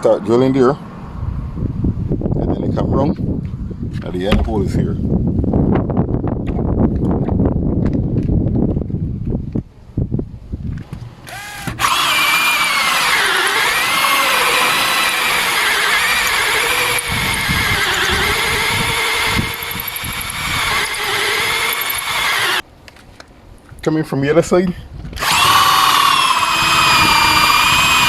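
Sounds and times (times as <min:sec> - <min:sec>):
electric drill boring wood: 0:11.3 - 0:22.6, 0:25.2 - 0:28.0.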